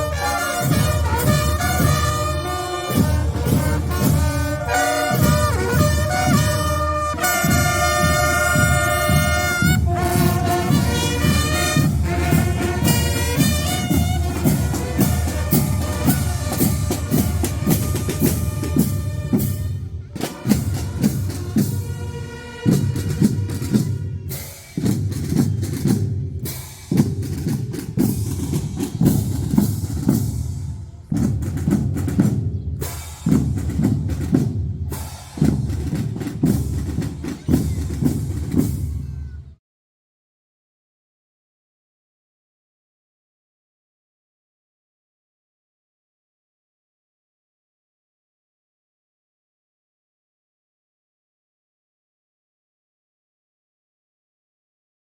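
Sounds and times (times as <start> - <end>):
brass notes: 0.0 - 24.6
drums beating a marching cadence: 0.0 - 39.4.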